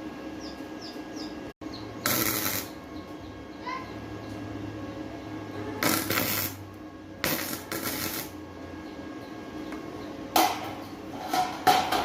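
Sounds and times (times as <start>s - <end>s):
welder arc crackling: 2.0s - 2.9s, 5.8s - 8.4s.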